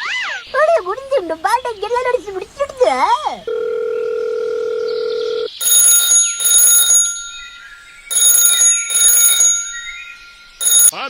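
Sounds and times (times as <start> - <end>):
high electronic ringing: 3.5 - 11.0.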